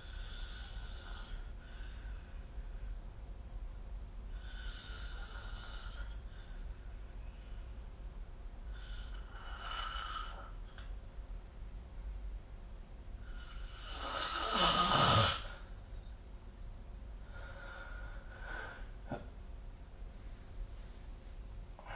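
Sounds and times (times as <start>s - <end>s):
person snoring: 13.5s - 15.6s.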